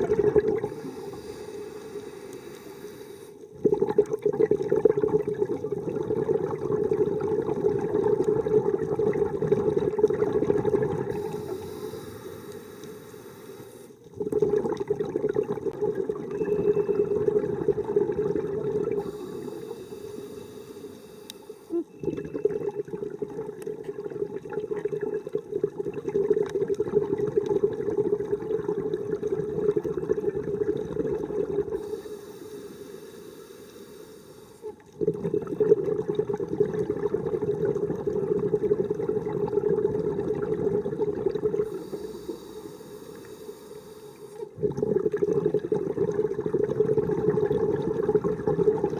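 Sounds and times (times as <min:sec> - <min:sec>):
bubbling exhales underwater: 0:00.0 - 0:13.2, 0:14.0 - 0:32.4, 0:34.6 - 0:43.4, 0:44.3 - 0:48.9
hissing regulator inhales: 0:00.6 - 0:03.4, 0:11.1 - 0:14.0, 0:18.9 - 0:21.9, 0:31.8 - 0:34.8, 0:41.6 - 0:44.6.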